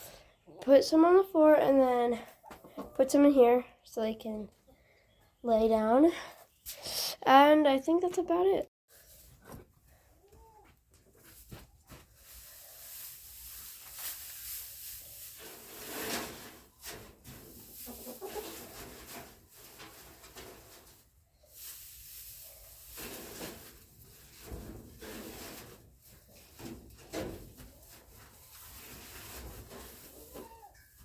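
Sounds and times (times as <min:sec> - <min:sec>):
hay rustling and crackling: 0:11.4 - 0:30.6
chicken clucking: 0:17.6 - 0:19.0.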